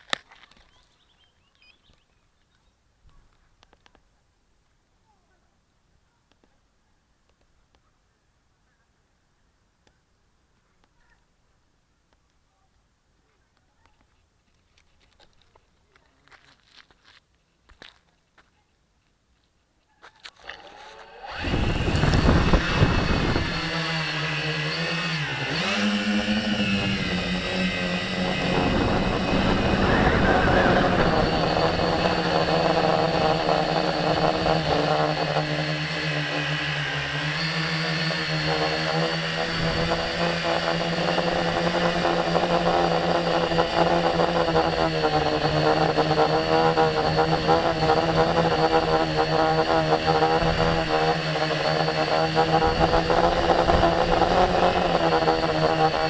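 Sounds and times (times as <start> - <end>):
drone motors buzzing: 20.4 - 56.0.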